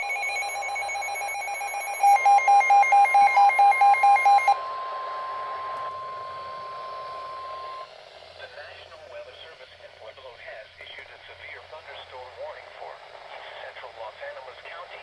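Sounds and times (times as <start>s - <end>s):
rapid electronic beeping: 0.0s - 7.9s
steady warning alarm tone: 0.0s - 7.9s.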